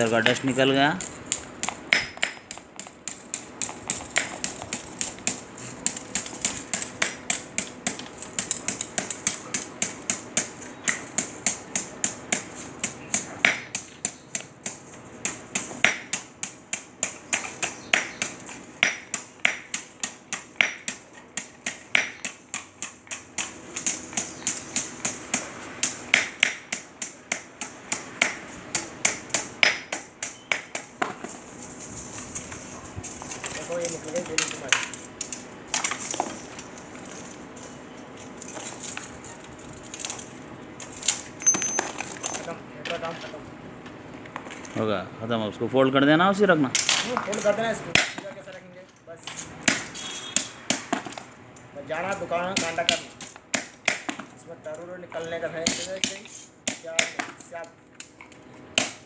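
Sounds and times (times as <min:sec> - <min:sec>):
sharp knocks on metal element: 0:01.3 - 0:31.5.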